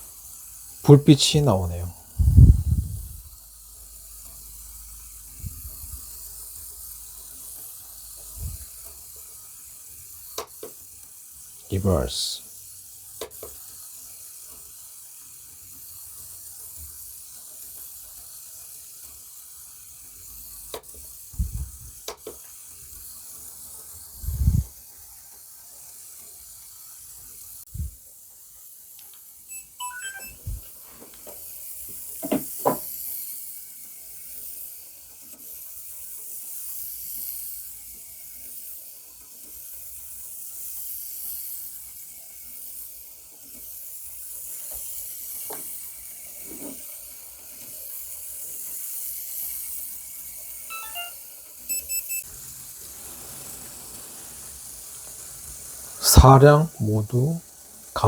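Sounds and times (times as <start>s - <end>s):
model train hissing on track: 0.0s - 2.2s, 3.0s - 29.5s, 30.7s - 58.0s.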